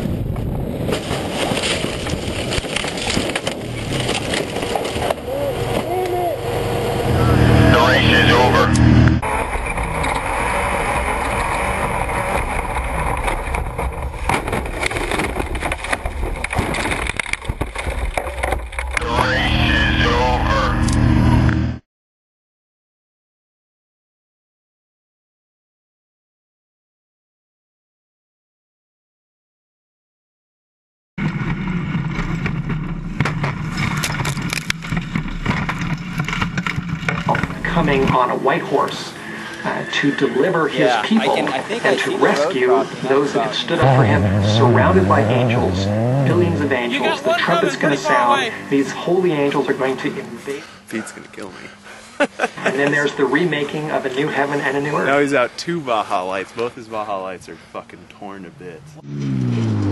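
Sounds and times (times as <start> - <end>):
truck engine and wind noise: 0.0 - 21.8, 31.2 - 40.7, 42.9 - 53.5
truck engine running: 3.2 - 16.2, 43.8 - 50.9
sharp knocks and rattles: 12.2 - 19.0, 31.2 - 37.6
rattles and knocks: 31.3 - 37.6.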